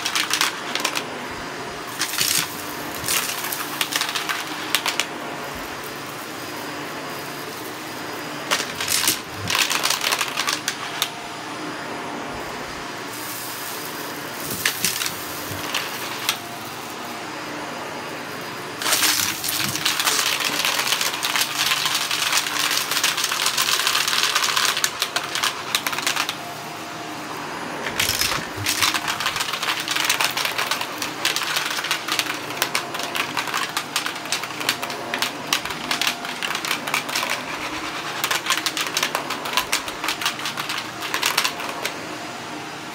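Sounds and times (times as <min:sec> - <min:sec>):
rapid clicking and rattling: 0:00.0 - 0:01.0, 0:01.9 - 0:05.1, 0:08.5 - 0:11.1, 0:18.8 - 0:26.4, 0:28.0 - 0:41.9
vacuum cleaner motor humming: 0:00.0 - 0:42.9.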